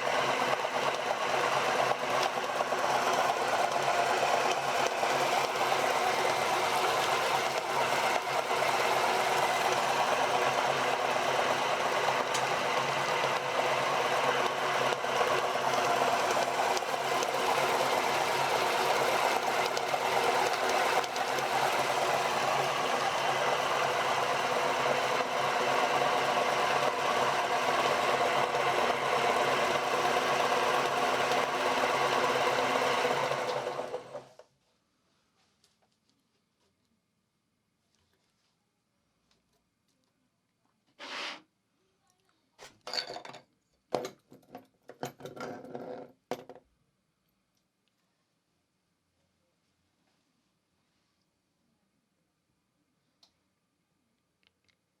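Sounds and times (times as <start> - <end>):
electric grinder motor running: 0.0 - 34.3.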